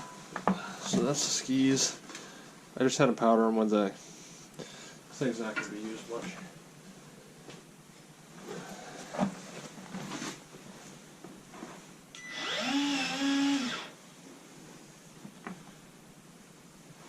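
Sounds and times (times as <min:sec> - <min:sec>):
power drill whine: 0:12.2 - 0:14.0.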